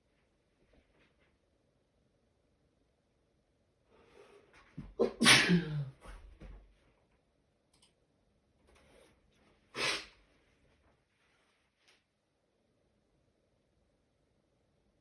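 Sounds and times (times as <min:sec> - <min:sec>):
person sneezing: 0:04.8 - 0:06.2, 0:09.8 - 0:10.2.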